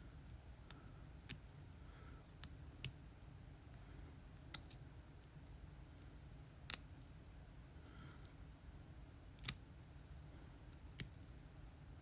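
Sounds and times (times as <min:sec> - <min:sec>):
metallic lock picking clicks: 0:04.4 - 0:04.8, 0:06.7 - 0:07.1, 0:09.4 - 0:09.6.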